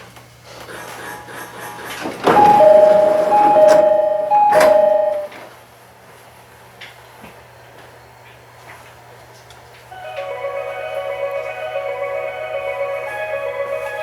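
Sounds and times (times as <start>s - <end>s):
train door two-tone chime: 1.6s - 5.5s, 10.0s - 14.0s.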